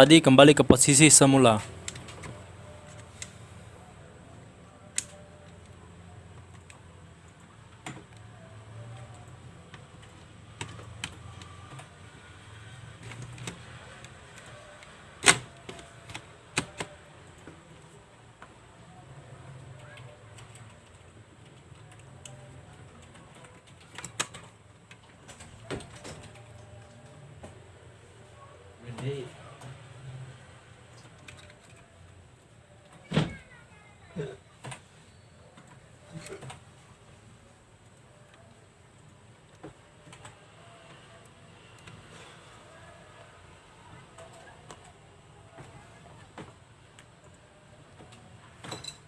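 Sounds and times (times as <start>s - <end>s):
laptop parts clicking: 4.9s - 5.8s, 13.0s - 17.6s, 19.8s - 27.0s.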